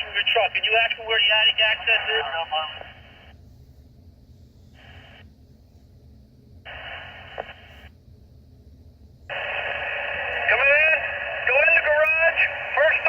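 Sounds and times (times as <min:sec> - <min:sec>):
low steady hum: 0:00.0 - 0:13.0
radio click: 0:06.7 - 0:07.9, 0:09.3 - 0:13.0
radio static bursts: 0:06.7 - 0:07.9, 0:09.3 - 0:13.0.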